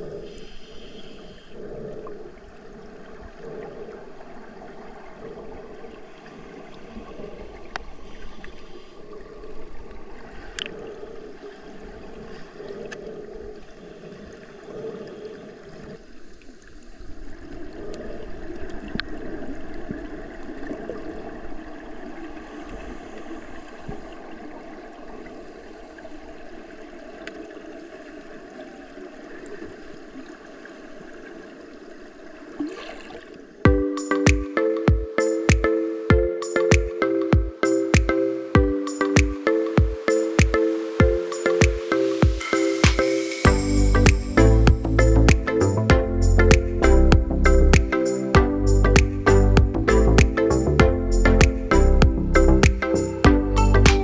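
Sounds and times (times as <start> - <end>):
water sloshing and gurgling: 27.7 - 33.9.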